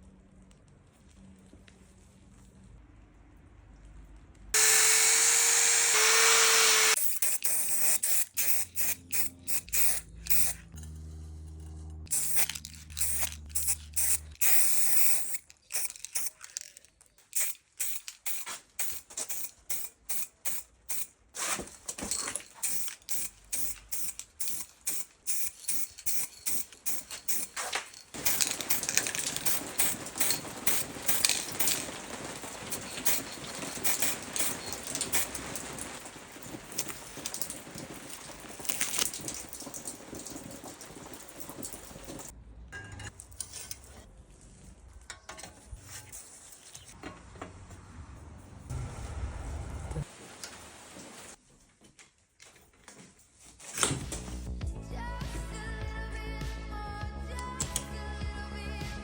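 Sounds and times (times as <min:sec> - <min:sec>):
spray can hissing: 0:05.8 - 0:10.7, 0:12.1 - 0:16.4, 0:17.3 - 0:21.6, 0:22.6 - 0:31.9, 0:32.7 - 0:36.0.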